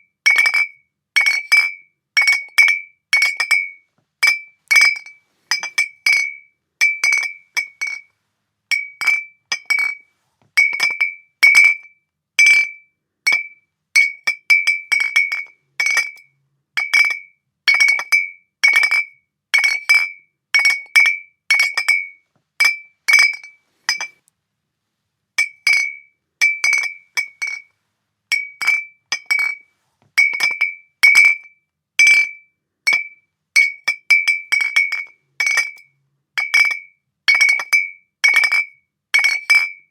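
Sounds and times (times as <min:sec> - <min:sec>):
glass bottles clinking: 0:01.6 - 0:08.1, 0:08.7 - 0:10.0, 0:10.6 - 0:11.8, 0:20.6 - 0:24.2, 0:25.4 - 0:27.7, 0:28.3 - 0:29.6, 0:30.2 - 0:31.4, 0:32.0 - 0:35.8, 0:36.4 - 0:39.8.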